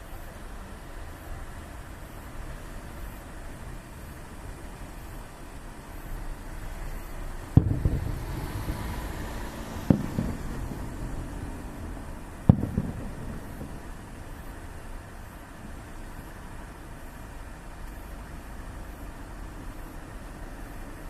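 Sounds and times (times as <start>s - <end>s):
low background rumble: 0.0s - 21.0s
fireworks bangs with echo: 7.5s - 11.6s, 12.3s - 14.6s.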